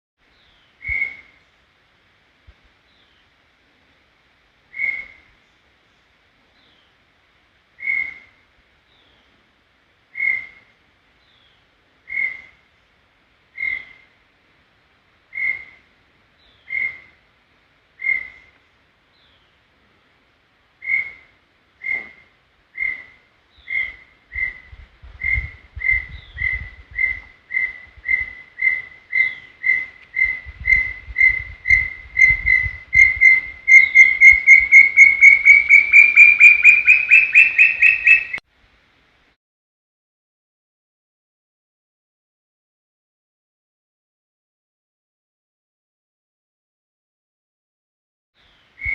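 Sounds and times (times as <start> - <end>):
bird whistling single notes: 27.0 - 38.4.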